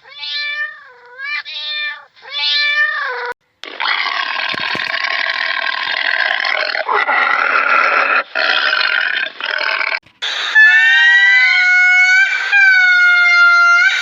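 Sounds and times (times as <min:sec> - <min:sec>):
harsh rasping animal call: 0:05.9 - 0:14.0
high-pitched rising animal call: 0:10.4 - 0:14.0.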